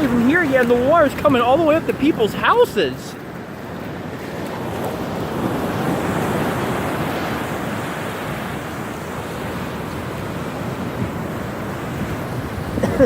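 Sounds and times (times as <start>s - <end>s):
surf breaking on beach: 0.0s - 13.0s
wind buffeting microphone: 0.0s - 13.0s.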